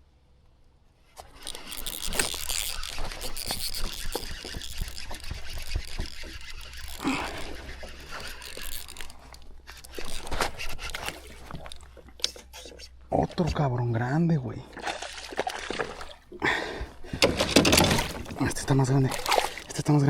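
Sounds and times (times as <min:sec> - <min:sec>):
scraping and small knocks: 0:01.0 - 0:13.5
water splashing: 0:14.6 - 0:20.0.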